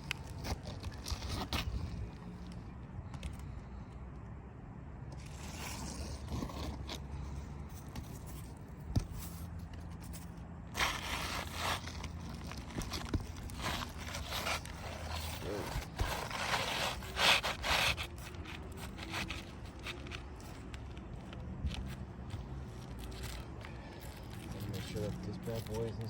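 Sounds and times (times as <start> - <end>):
roofing shingles scraping: 10.0 - 20.6.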